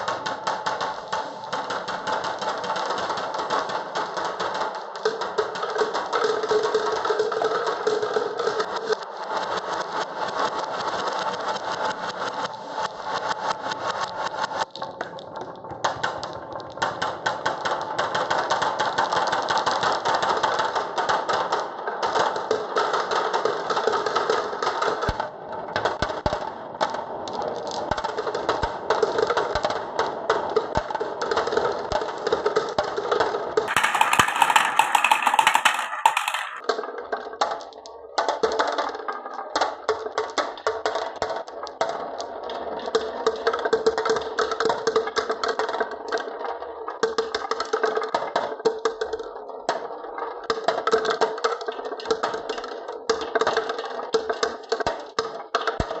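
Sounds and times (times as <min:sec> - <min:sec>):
marbles clacking on wooden tracks: 0:25.8 - 0:56.0.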